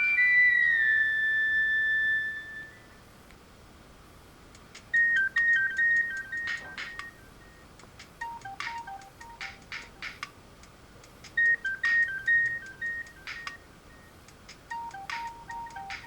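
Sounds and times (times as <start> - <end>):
ringtone with high beeping notes: 0.0 - 2.6, 4.9 - 7.6, 8.2 - 10.2, 11.4 - 16.0.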